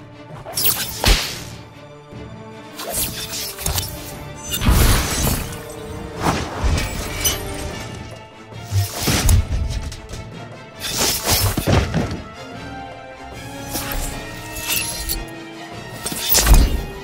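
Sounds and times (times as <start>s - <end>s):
background music: 0.0s - 17.0s
magic spell sound effects: 2.8s - 9.1s.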